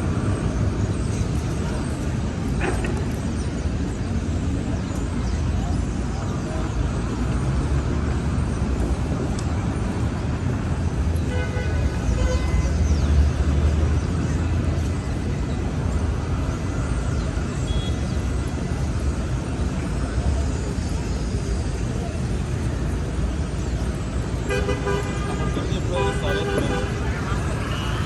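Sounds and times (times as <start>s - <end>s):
traffic rumble: 0.0s - 28.0s.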